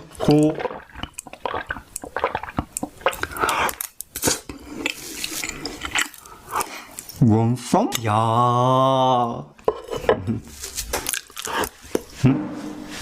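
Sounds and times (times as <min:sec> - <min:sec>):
wet chewing sounds: 0:00.0 - 0:07.2, 0:11.0 - 0:12.1.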